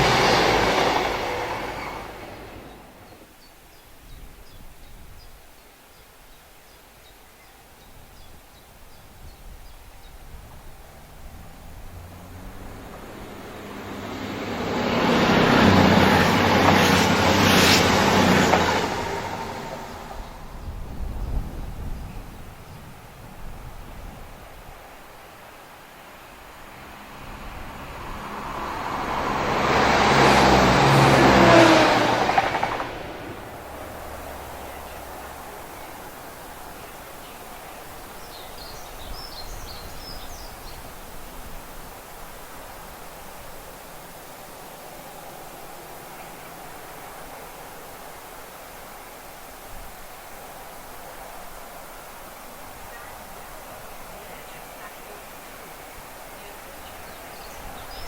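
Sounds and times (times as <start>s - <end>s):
diesel train passing: 0.0s - 3.3s, 10.6s - 23.8s, 25.1s - 41.5s.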